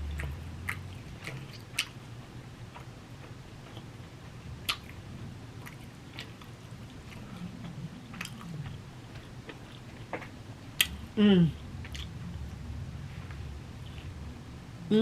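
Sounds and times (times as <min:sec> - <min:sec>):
close chewing of food: 0:00.0 - 0:02.0, 0:02.6 - 0:11.0.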